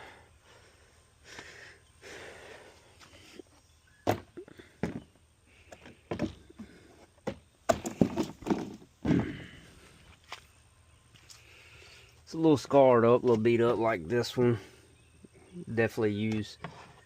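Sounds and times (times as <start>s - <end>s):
irregular knocks and thuds: 4.0s - 5.2s, 5.8s - 9.5s.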